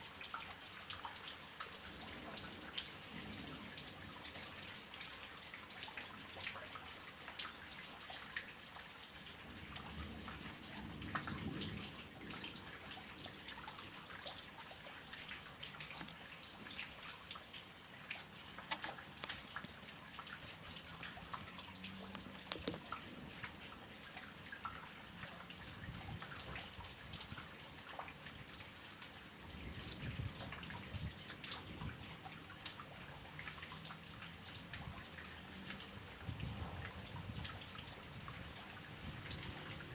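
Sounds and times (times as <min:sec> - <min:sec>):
soft rain hiss: 0:00.0 - 0:39.9
raindrops tapping: 0:00.3 - 0:28.3.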